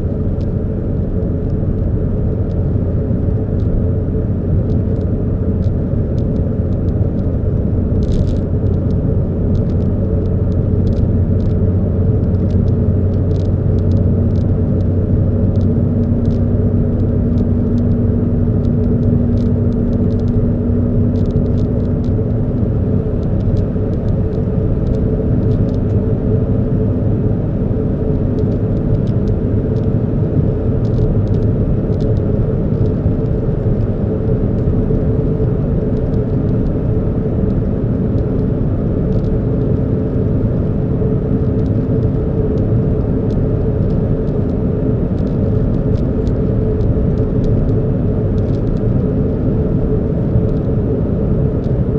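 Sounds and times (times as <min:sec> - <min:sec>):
car engine humming: 0:00.0 - 0:50.8
light ticks and rattles: 0:04.6 - 0:18.0.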